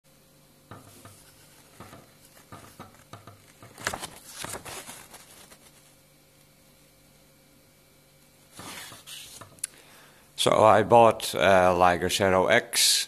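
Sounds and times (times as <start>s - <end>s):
rustling: 0.9s - 6.0s.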